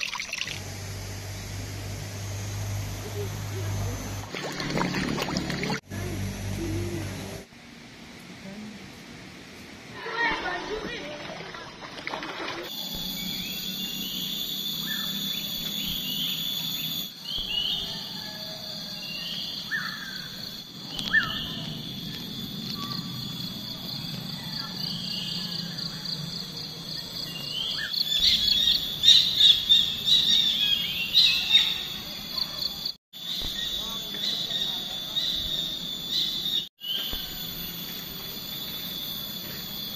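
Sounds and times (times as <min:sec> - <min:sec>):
high insect drone: 0:00.0 - 0:08.2, 0:12.7 - 0:39.9
birds chirping: 0:19.0 - 0:22.0, 0:26.8 - 0:37.8.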